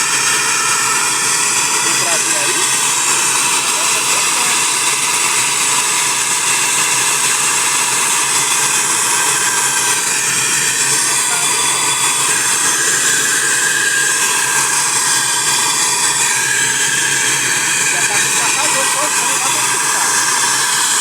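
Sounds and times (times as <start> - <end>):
gas torch flame hissing: 0.0 - 21.0.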